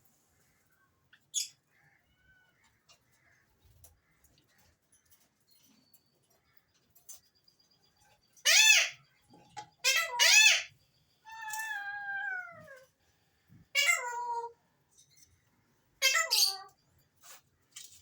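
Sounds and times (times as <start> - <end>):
parakeet calling: 8.5 - 9.0, 9.8 - 10.7, 16.0 - 16.7.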